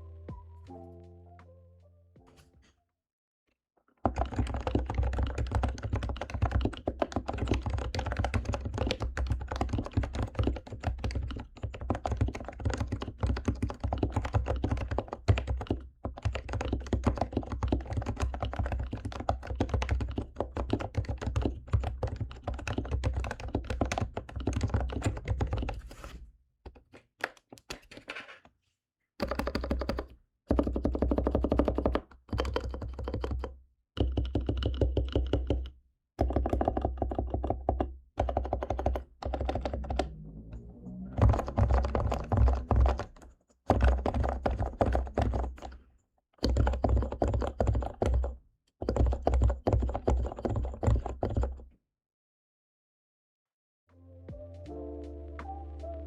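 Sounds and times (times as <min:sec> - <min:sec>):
typing with dull thuds: 0:04.0 - 0:25.8, 0:29.2 - 0:39.9, 0:41.3 - 0:45.8, 0:46.4 - 0:51.6.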